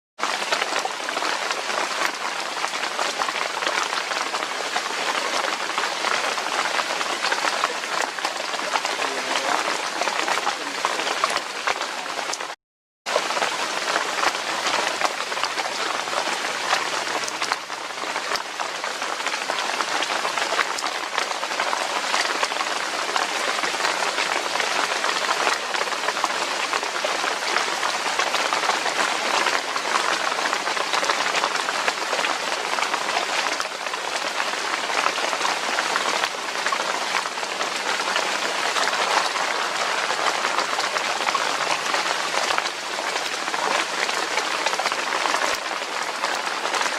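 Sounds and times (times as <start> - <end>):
rain falling: 0.2 - 46.9.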